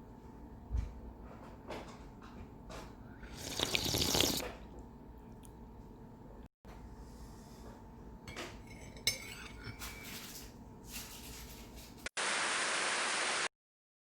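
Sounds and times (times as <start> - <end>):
kitchenware clinking: 8.2 - 11.8.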